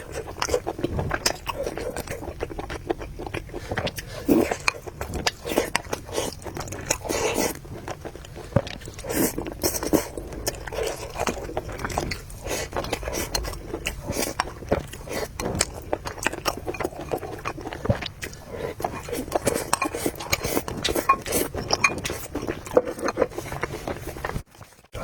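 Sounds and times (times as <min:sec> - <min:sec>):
person chewing noodles: 0:00.0 - 0:25.0
cutlery clinking against bowl: 0:18.8 - 0:23.4.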